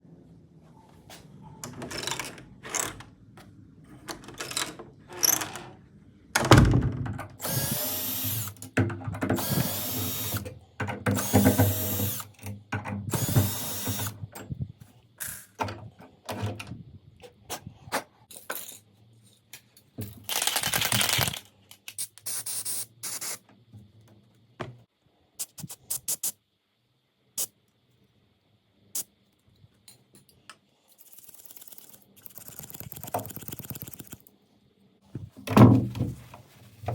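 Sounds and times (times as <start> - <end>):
drill-like whir: 7.4 - 8.6, 9.4 - 10.5, 11.1 - 12.4, 13.1 - 14.2.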